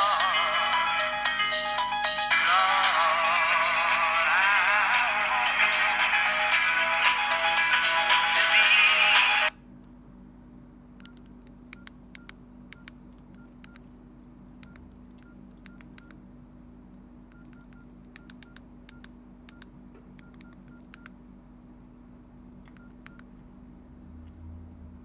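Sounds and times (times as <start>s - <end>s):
phone keypad beeps: 17.3s - 21.1s.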